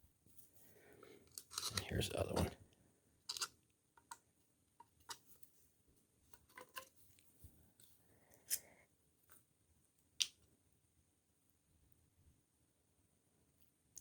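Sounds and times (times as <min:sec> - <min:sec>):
small plastic parts clicking: 0:01.2 - 0:01.9, 0:03.3 - 0:04.2
handling rustle: 0:01.3 - 0:02.6.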